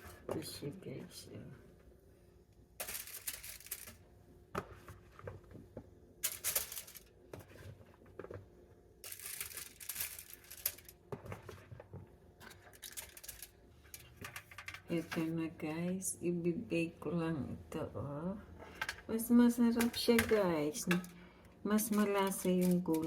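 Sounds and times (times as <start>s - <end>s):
aluminium foil crinkling and tearing: 2.8s - 4.0s, 9.0s - 11.0s, 12.5s - 14.7s, 21.8s - 23.0s.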